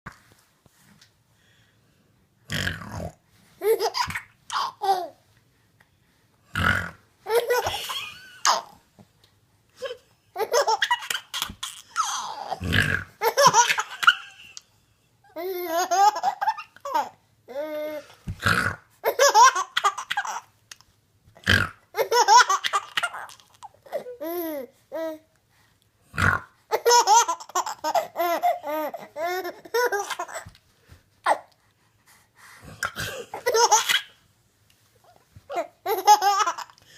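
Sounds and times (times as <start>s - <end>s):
baby laughing: 3.6s - 5.2s, 7.2s - 8.8s, 9.8s - 12.6s, 13.2s - 14.6s, 15.3s - 18.1s, 19.0s - 20.5s, 21.9s - 25.1s, 26.7s - 30.6s, 32.9s - 34.2s, 35.5s - 36.8s.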